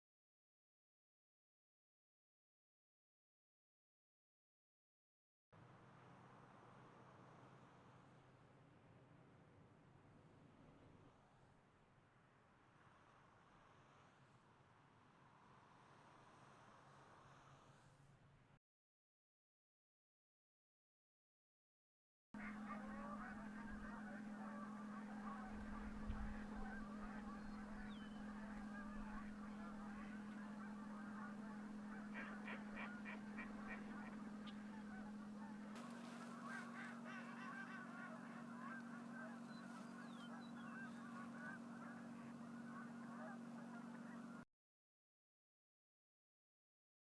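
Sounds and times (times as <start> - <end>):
flock of geese honking: 22.4 - 44.4
steady low hum: 22.4 - 44.4.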